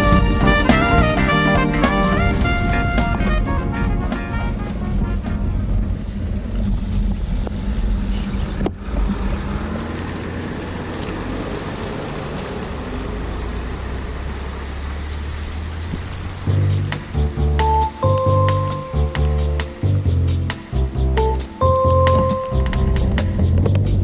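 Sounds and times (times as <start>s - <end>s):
background music: 0.0s - 5.9s, 16.5s - 24.0s
wet road hiss: 16.1s - 24.0s.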